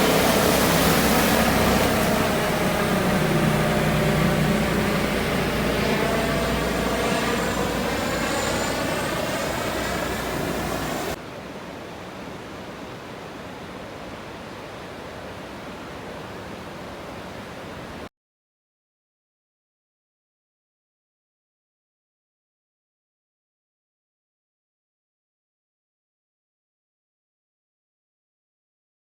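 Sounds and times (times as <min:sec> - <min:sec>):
loud rushing noise: 0:00.0 - 0:11.2
motor running: 0:00.0 - 0:11.2.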